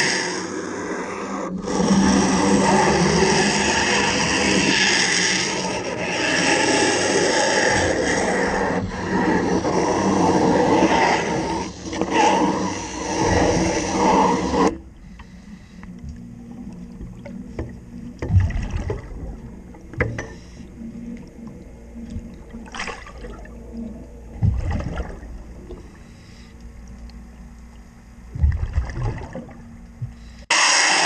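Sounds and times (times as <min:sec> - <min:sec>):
low underwater hum: 0:00.0 - 0:31.0
loud underwater bursts: 0:30.5 - 0:31.0.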